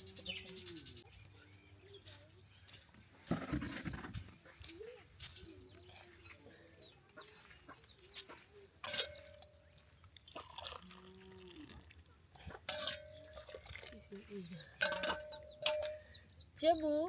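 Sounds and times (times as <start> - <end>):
chickens clucking: 3.2 - 10.6, 11.7 - 17.0.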